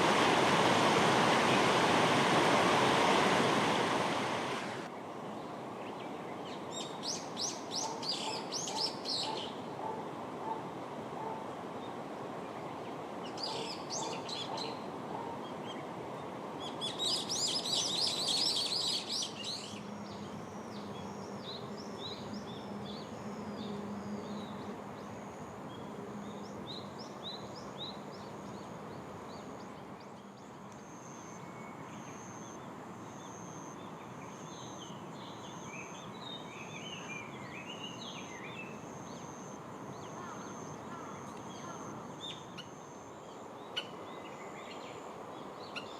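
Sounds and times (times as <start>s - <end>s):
background hiss: 0.0s - 45.9s
wild birds chirping: 4.2s - 45.9s.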